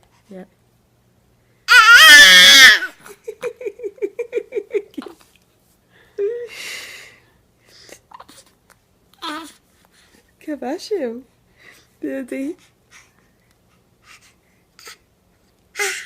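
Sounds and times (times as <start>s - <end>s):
person laughing: 3.0s - 5.2s.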